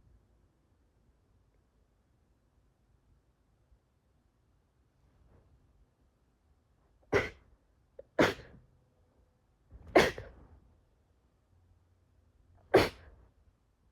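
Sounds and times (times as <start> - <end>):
person sneezing: 7.1 - 8.6, 9.9 - 10.4, 12.7 - 13.2.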